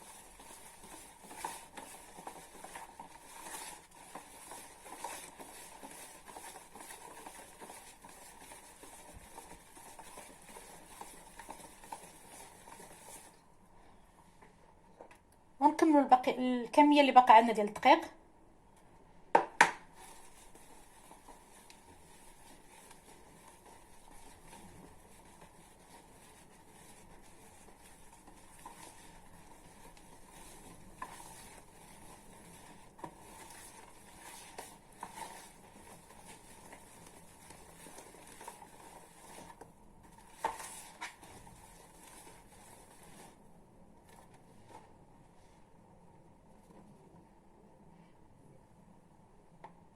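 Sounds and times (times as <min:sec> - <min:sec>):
stirring cake batter: 0:00.0 - 0:13.6, 0:19.9 - 0:44.5.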